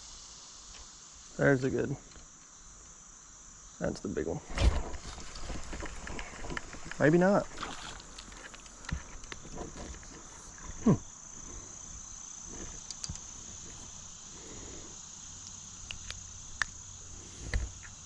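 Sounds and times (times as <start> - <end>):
insects shrilling: 0.0 - 18.0
faint clicks: 12.8 - 13.3.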